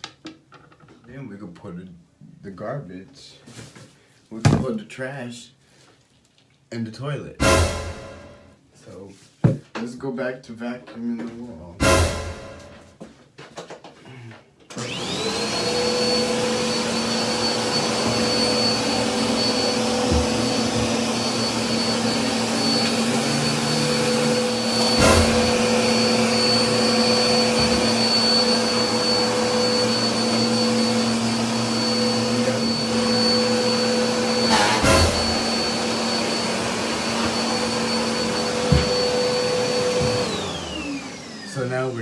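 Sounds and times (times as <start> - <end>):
vacuum cleaner motor whine: 11.8 - 12.8, 14.7 - 42.0.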